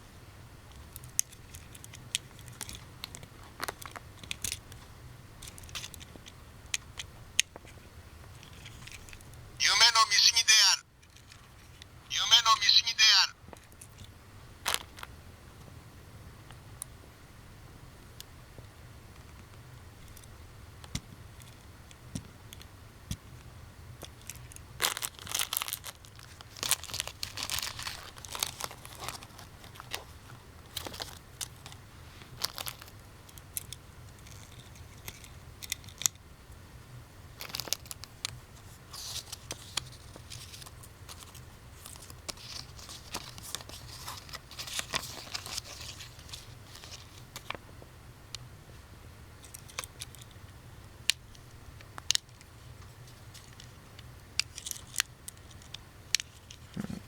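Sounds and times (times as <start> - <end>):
plastic crinkling: 24.2 - 36.1, 37.4 - 47.6.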